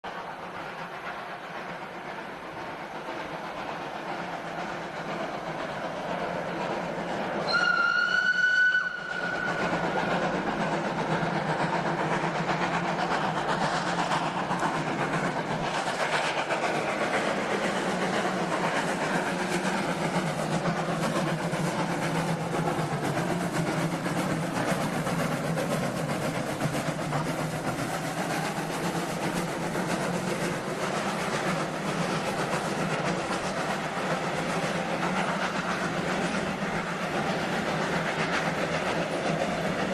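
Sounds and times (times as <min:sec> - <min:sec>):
steam train running: 0:00.0 - 0:39.9
steam locomotive whistle: 0:07.4 - 0:09.9.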